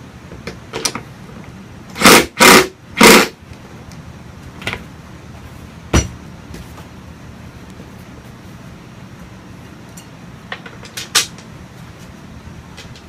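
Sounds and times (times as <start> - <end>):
power driver driving screws: 2.0 - 3.3
knock of wooden parts: 5.9 - 6.2.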